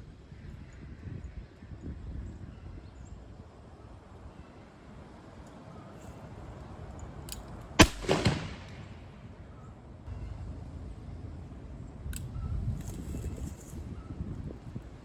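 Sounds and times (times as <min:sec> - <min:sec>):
wind rumbling on microphone: 0:00.0 - 0:04.4, 0:11.8 - 0:15.0
revolver gunshot with echo: 0:07.8 - 0:09.2.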